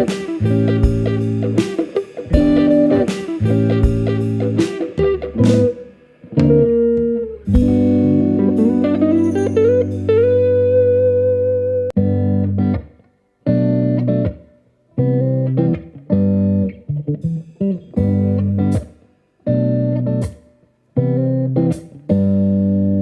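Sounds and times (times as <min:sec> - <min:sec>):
plucked guitar chords: 0:00.0 - 0:23.0.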